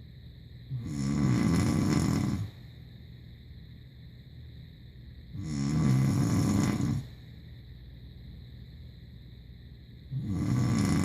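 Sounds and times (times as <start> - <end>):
faint low hum: 0.0 - 11.0
person snoring loudly: 0.7 - 2.6, 5.4 - 7.1, 10.1 - 11.0.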